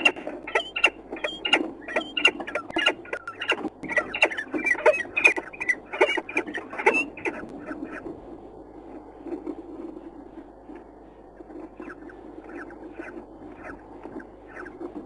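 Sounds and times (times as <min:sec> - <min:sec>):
birds squeaking: 0:00.0 - 0:08.0, 0:11.8 - 0:14.9.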